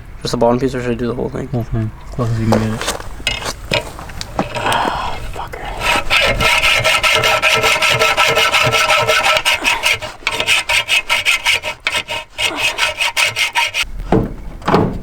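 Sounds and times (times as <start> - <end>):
hacksaw cutting metal: 5.8 - 13.8.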